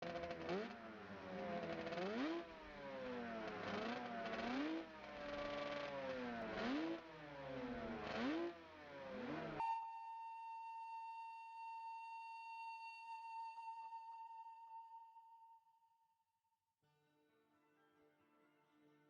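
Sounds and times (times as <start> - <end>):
motorcycle engine revving: 0.0 - 9.6.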